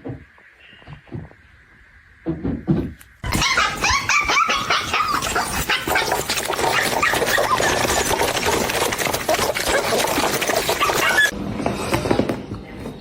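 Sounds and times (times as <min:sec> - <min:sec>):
dog yipping and barking: 0:03.2 - 0:11.3.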